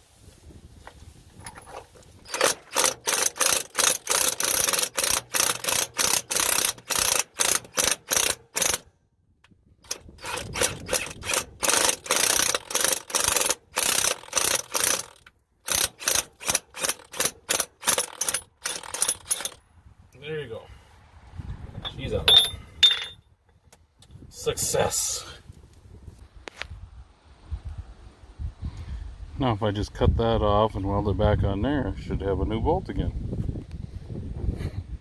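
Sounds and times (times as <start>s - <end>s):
hand ratchet clicking: 2.3s - 8.8s, 9.8s - 19.6s.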